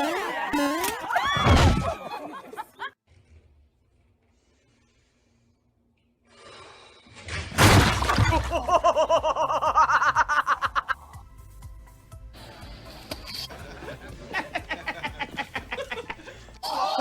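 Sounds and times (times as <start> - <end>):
loud crash: 7.5 - 8.6
person laughing hard: 8.3 - 11.1, 13.6 - 17.0.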